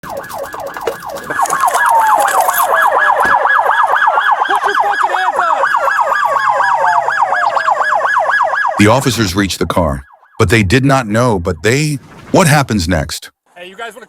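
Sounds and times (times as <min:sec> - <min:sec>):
police siren fast yelp: 0:00.0 - 0:10.5
siren gliding downward: 0:00.0 - 0:10.8.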